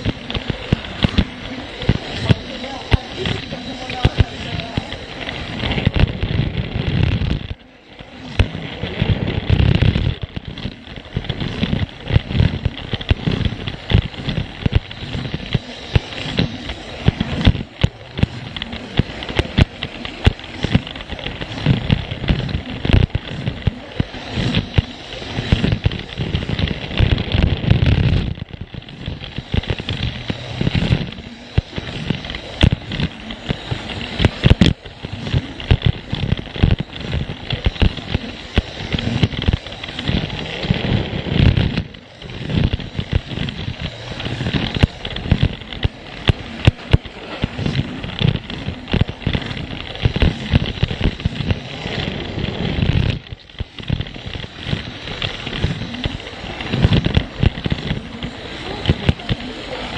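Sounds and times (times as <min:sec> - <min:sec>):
toy train motor rumbling: 0:00.0 - 0:59.9
wheels clicking over track joints: 0:00.0 - 0:59.9.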